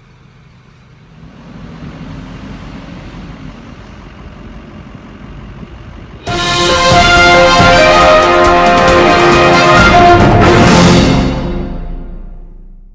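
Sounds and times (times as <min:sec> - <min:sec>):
vehicle engine rumbling: 0:00.0 - 0:12.9
music: 0:06.3 - 0:12.9.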